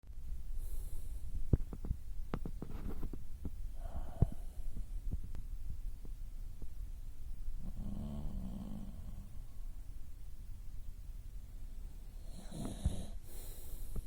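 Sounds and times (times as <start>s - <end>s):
steady low rumble: 0.1s - 14.0s
person breathing: 0.6s - 1.5s, 3.7s - 5.0s, 12.1s - 14.0s.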